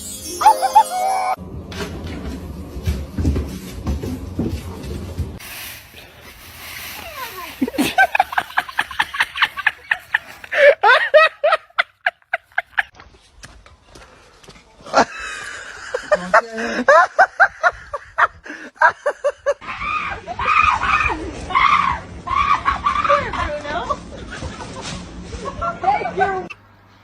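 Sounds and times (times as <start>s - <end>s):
person laughing hard: 0.4s - 1.4s, 7.6s - 12.9s.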